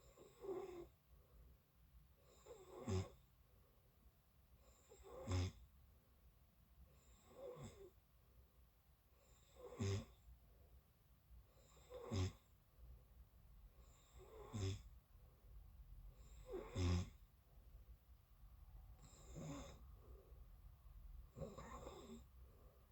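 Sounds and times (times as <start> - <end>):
person snoring: 16.2 - 17.2, 19.0 - 19.8, 21.4 - 22.3.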